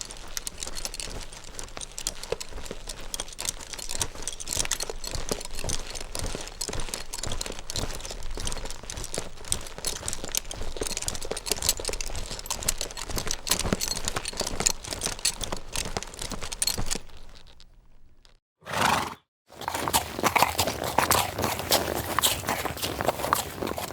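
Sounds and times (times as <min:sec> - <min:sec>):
horse hooves on loose ground: 0:00.0 - 0:17.6, 0:18.8 - 0:23.9.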